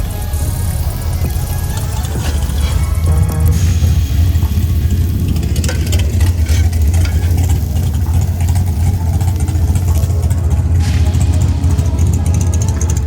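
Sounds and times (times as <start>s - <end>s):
race car engine idling: 0.0s - 13.0s.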